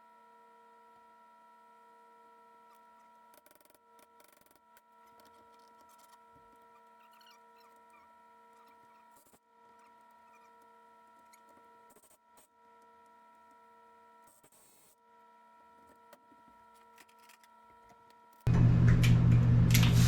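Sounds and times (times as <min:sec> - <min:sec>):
faint steady hum: 0:18.5 - 0:20.0
loud low hum: 0:18.5 - 0:20.0.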